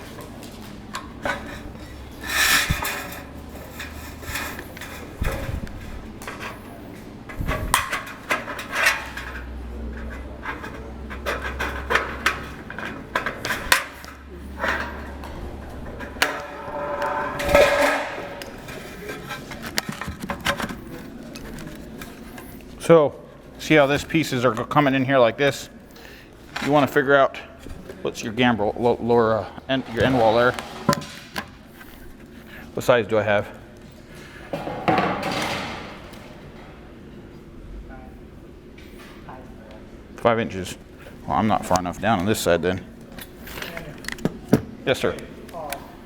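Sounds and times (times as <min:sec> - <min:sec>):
sheet metal clanking and scraping: 0:00.9 - 0:22.6, 0:29.7 - 0:31.6, 0:34.5 - 0:36.9.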